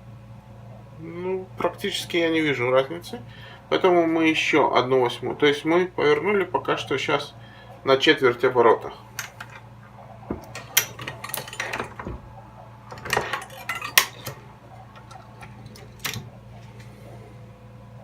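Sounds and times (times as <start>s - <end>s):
metallic clicks and clinks: 10.5s - 12.0s, 12.9s - 16.3s.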